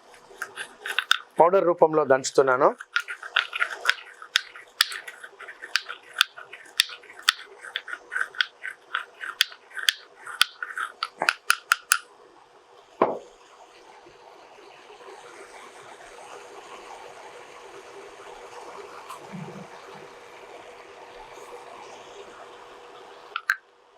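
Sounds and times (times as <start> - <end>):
pestle pounding in mortar: 0.4 - 1.4, 2.8 - 12.0.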